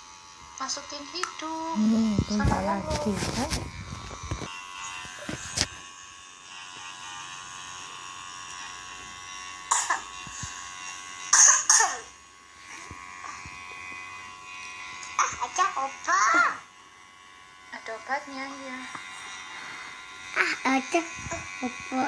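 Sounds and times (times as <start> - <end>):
nebulizer buzzing: 0.0 - 22.0
child coughing: 9.7 - 10.1, 11.4 - 12.1.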